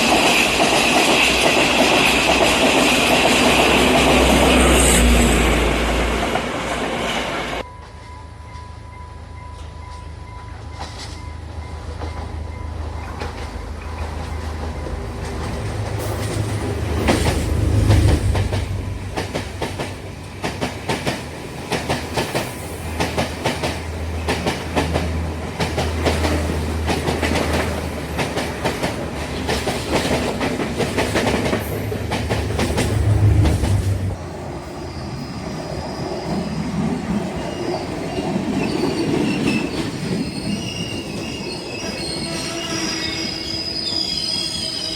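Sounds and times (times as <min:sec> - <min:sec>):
train wheels clattering on rails: 0:00.0 - 0:08.8, 0:09.5 - 0:34.2
diesel train engine hum: 0:00.0 - 0:38.6
faint wheel squeal: 0:38.6 - 0:44.9.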